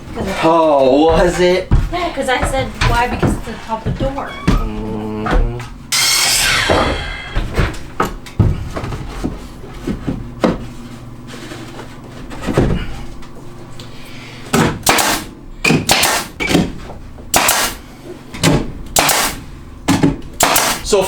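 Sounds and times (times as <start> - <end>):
sharp knocks on wooden framing: 14.5 - 17.8, 18.4 - 20.8.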